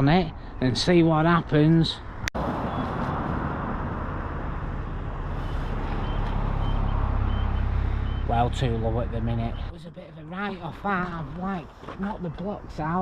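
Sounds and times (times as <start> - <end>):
passing vehicle engine rumble: 2.1 - 9.8.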